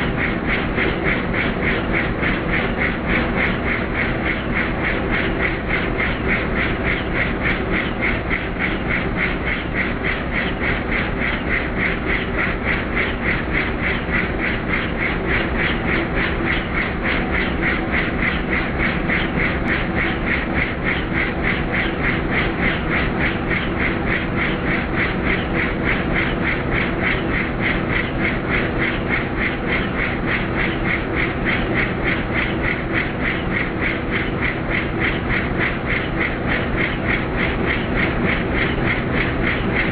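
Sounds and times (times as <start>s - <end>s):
engine drone: 0.0s - 39.9s
helicopter rotor chop: 0.0s - 39.9s.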